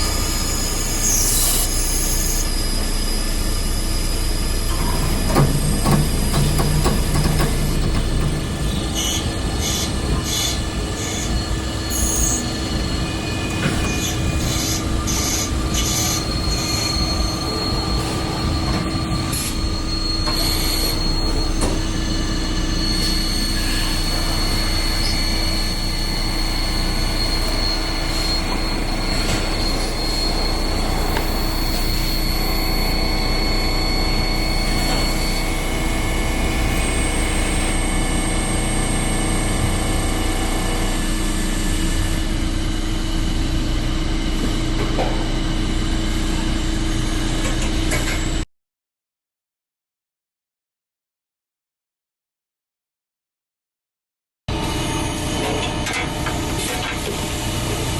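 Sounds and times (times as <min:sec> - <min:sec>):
machine cutting metal: 0:00.0 - 0:38.0
high-pitched whine: 0:00.0 - 0:48.4
short high squeaks: 0:04.6 - 0:37.6.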